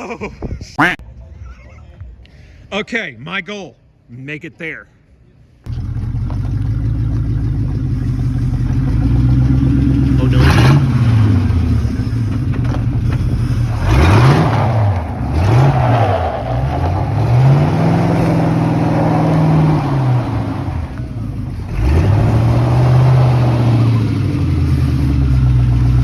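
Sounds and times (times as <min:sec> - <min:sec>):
car engine revving: 0:05.7 - 0:26.0.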